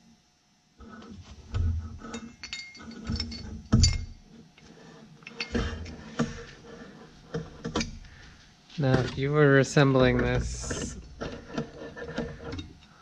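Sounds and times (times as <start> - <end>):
small metal parts clinking: 2.1 - 4.2.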